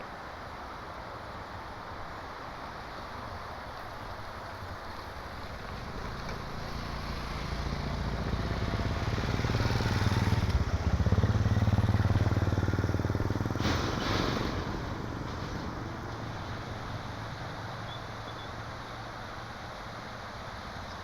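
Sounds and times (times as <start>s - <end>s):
small engine passing by: 5.4s - 15.9s.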